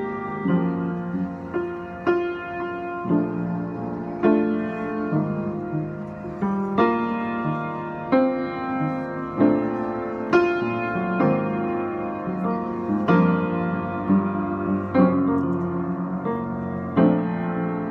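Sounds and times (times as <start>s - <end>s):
piano chords played slowly: 0.0s - 17.9s.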